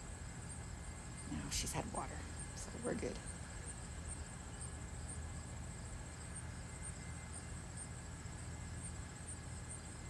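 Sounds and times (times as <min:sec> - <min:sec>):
high insect chirp: 0:00.1 - 0:10.0.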